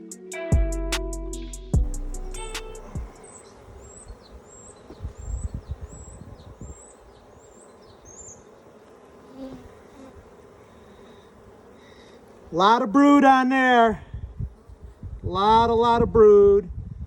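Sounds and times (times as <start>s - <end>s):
high chirp: 0.0s - 4.0s
bees buzzing: 0.0s - 15.8s.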